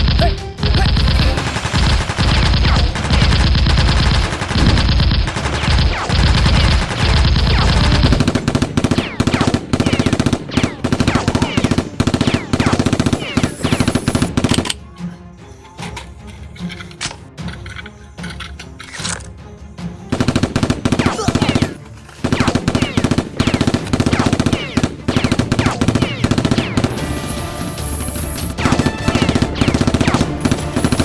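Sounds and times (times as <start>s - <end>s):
background music: 0.0s - 31.0s
automatic gunfire bursts: 0.7s - 14.3s, 22.3s - 31.0s.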